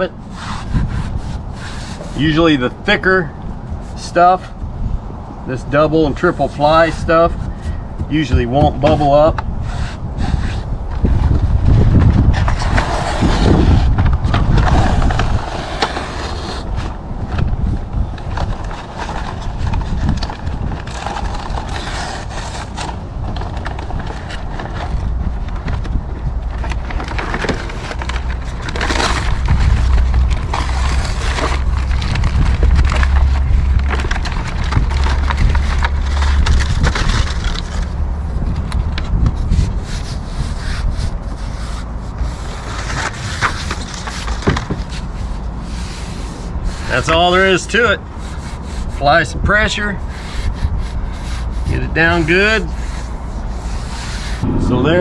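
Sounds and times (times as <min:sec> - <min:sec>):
backing paper peeling: 0:17.6 - 0:49.0, 0:50.0 - 0:54.4
hands rubbing foam pad: 0:50.0 - 0:54.4
low rumble: 0:54.4 - 0:55.0.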